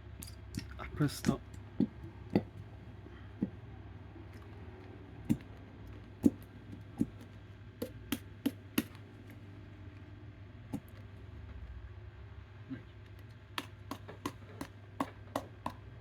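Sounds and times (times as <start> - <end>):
low steady hum: 0.0 - 16.0
containers and utensils tapping: 13.2 - 15.9.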